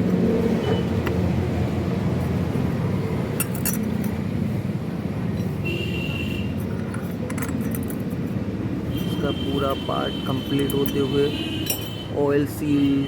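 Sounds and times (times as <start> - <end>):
background traffic rumble: 0.0 - 13.0
metallic clinks of tools: 10.6 - 12.0.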